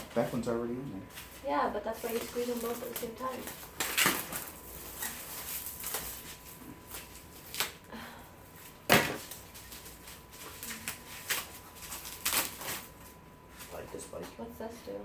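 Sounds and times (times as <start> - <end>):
packaging rustling: 2.0 - 7.8, 8.6 - 13.2.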